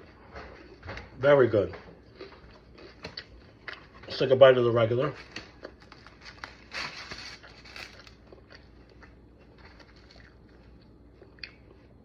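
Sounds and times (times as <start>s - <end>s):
crunching bites of pizza: 0.2s - 12.0s
chewing: 1.8s - 4.2s, 7.4s - 12.0s.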